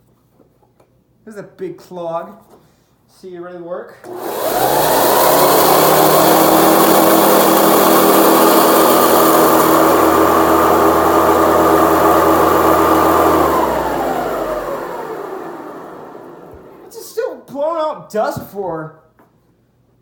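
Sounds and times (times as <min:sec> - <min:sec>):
man talking: 0:01.3 - 0:02.4, 0:16.9 - 0:19.0
vacuum cleaner motor whining: 0:04.0 - 0:17.0.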